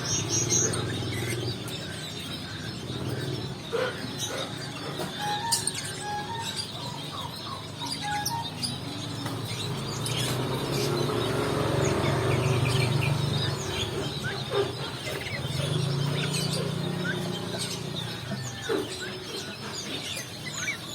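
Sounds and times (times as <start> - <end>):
high bird chirps: 0.0 - 20.9.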